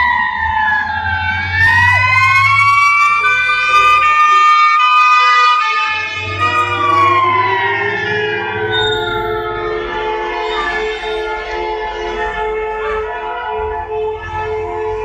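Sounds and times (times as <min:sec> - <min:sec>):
fire truck siren wailing: 0:00.0 - 0:15.0
stepped shifting tones: 0:06.2 - 0:15.0.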